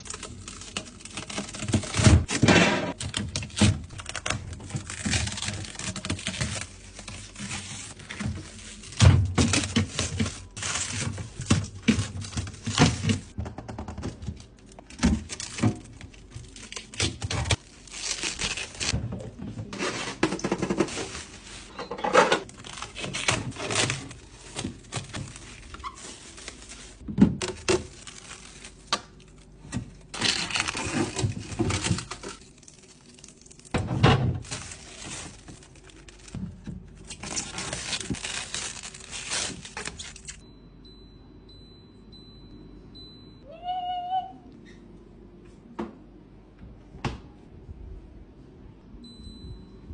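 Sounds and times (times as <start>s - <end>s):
plastic packaging tearing and crinkling: 0.0s - 13.4s, 14.3s - 19.0s, 22.4s - 40.4s.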